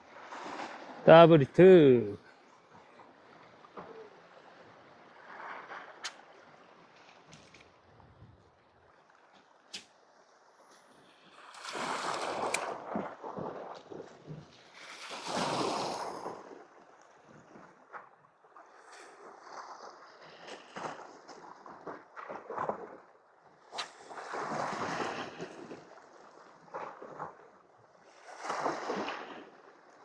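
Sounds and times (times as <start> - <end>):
waves surging over rocks: 0.8 - 2.2.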